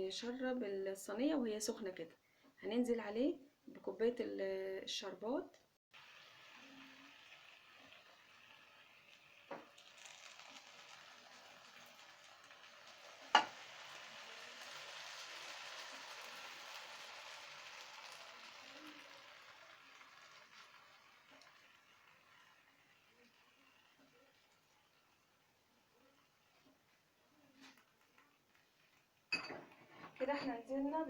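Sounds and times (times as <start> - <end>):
syrup sizzling on hot pastry: 5.9 - 29.9.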